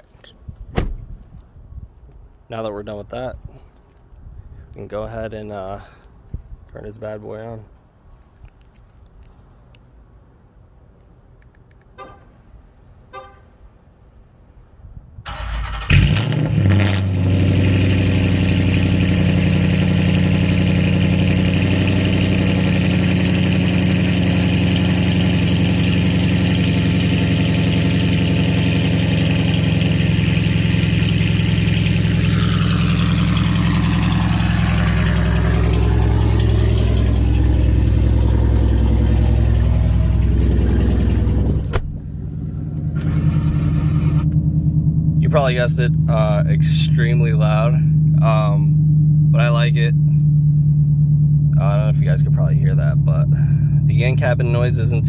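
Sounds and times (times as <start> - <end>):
loud car engine idling: 15.9 - 55.0.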